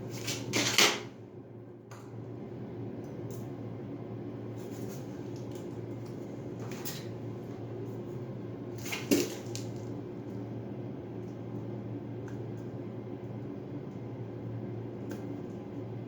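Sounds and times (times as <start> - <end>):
putty knife scraping tile: 0.2 - 1.0.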